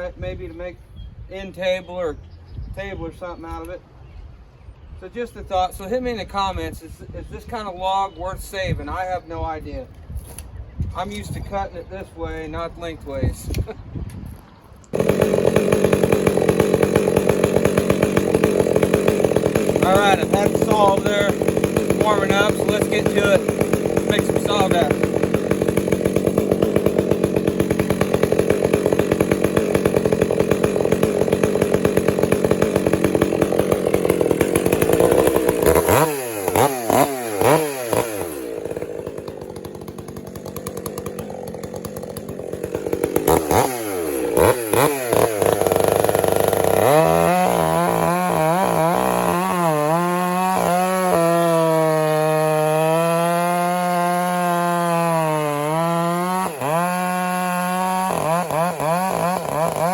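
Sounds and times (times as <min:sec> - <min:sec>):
chainsaw cutting wood: 0:14.9 - 0:59.9.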